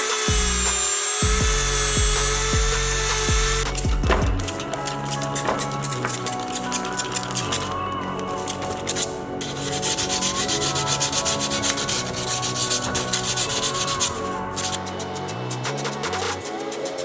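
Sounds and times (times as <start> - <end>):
sandpaper rubbing: 8.4 - 17.0.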